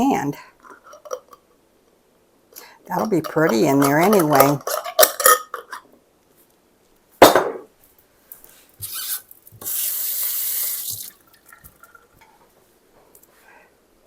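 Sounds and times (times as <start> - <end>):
faucet water running: 8.8 - 12.2.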